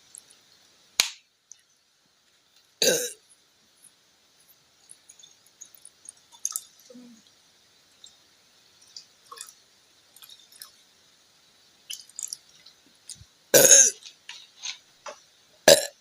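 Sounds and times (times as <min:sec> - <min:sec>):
woman burping: 0:02.8 - 0:03.2, 0:13.6 - 0:14.0, 0:15.7 - 0:15.9.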